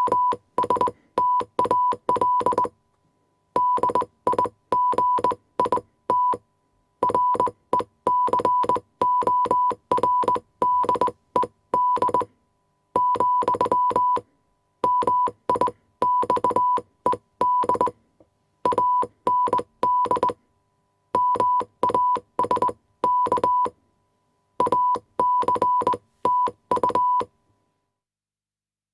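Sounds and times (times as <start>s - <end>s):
morse code tone beeps: 0.0s - 2.7s, 3.6s - 6.4s, 7.0s - 12.3s, 13.0s - 14.2s, 14.8s - 17.9s, 18.7s - 20.4s, 21.2s - 23.8s, 24.6s - 27.3s.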